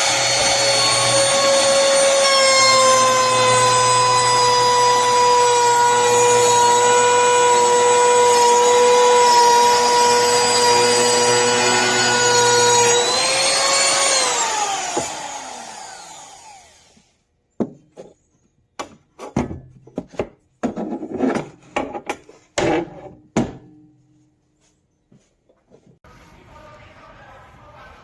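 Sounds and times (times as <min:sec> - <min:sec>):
wood router motor whining: 0:00.0 - 0:17.2.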